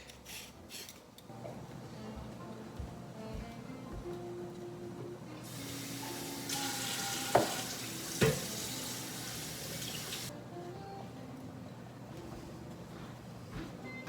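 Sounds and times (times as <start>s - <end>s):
tap water running: 5.4s - 10.3s.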